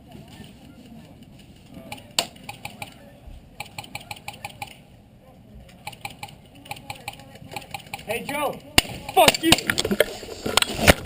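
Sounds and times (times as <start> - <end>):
airsoft guns firing: 5.8 - 9.8
loud crack: 8.8 - 9.9.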